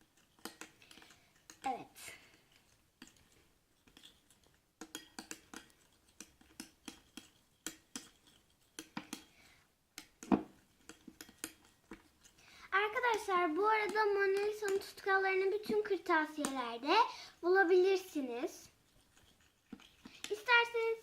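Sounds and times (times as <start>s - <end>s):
spoon stirring in a bowl: 0.0s - 17.3s, 17.9s - 21.0s.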